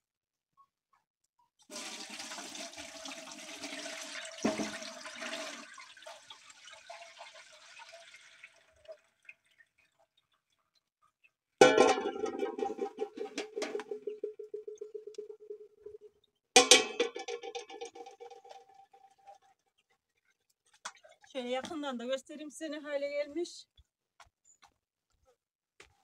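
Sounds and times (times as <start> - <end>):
liquid pouring through strainer: 1.7 - 10.4
knock: 4.5 - 4.8.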